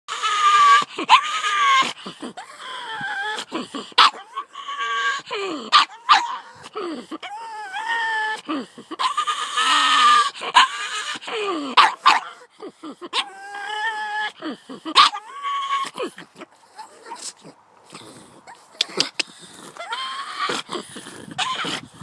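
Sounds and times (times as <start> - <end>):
dog whining cries: 0.1 - 6.4, 7.2 - 12.4, 13.1 - 16.2, 19.8 - 20.7, 21.3 - 22.0
dog yapping: 4.0 - 6.5, 9.0 - 11.2, 11.8 - 12.4, 14.9 - 16.1.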